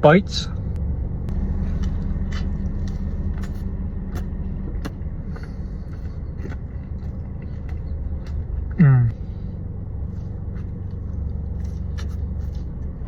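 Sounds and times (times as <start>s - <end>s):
car engine idling: 0.0s - 13.0s
faint chewing clicks: 4.8s - 8.8s.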